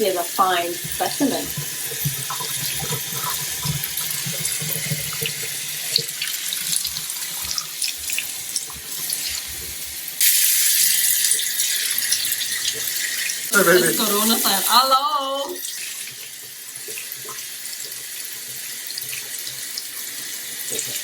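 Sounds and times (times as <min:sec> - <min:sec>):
tap water pouring over fur: 0:00.8 - 0:10.1.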